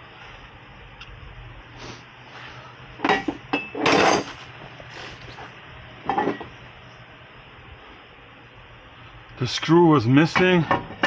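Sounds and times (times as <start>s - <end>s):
metal tools clanking: 3.1s - 4.4s.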